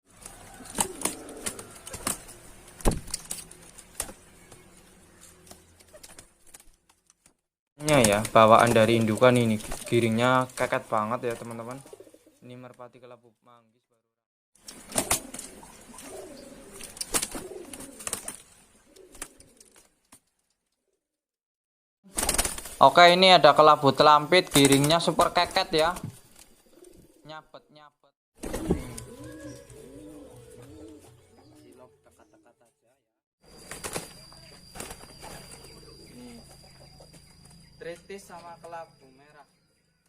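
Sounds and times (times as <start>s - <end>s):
pigeon wings clapping and fluttering: 0.1s - 12.0s, 14.6s - 20.3s, 22.1s - 23.2s, 24.4s - 26.5s, 28.4s - 29.7s, 33.5s - 35.8s
pigeon cooing: 0.3s - 2.4s, 11.5s - 12.4s, 14.7s - 19.8s, 28.4s - 32.6s, 33.6s - 37.2s.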